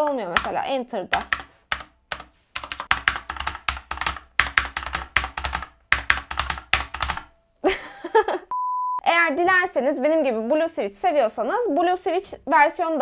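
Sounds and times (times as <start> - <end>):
mechanical keyboard typing: 0.0 - 7.3.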